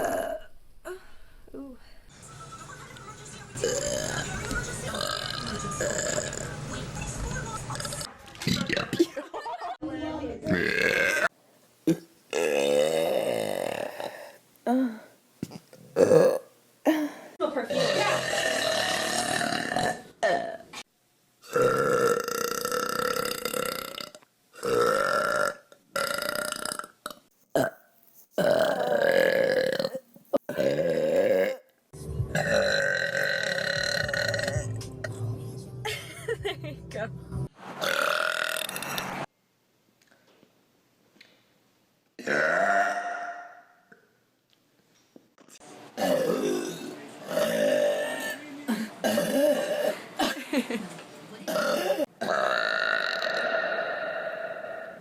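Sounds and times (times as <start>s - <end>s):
long human burps: 0.0s - 0.5s, 10.5s - 11.3s, 11.9s - 20.6s, 21.4s - 27.8s, 28.4s - 31.7s, 32.4s - 34.7s, 37.8s - 39.0s, 42.2s - 44.1s, 46.0s - 50.4s, 51.5s - 55.0s.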